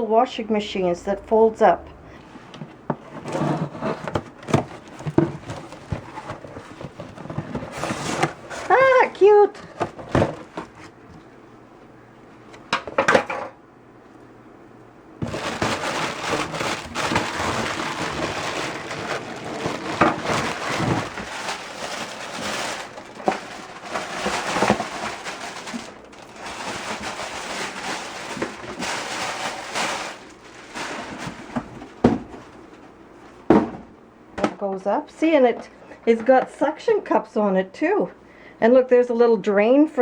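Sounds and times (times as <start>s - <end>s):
plastic packaging crinkling: 15.2s - 32.8s.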